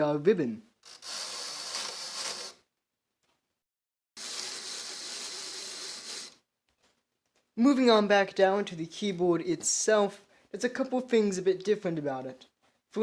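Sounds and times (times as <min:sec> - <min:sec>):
typewriter ratchet rasping: 0:00.8 - 0:02.6.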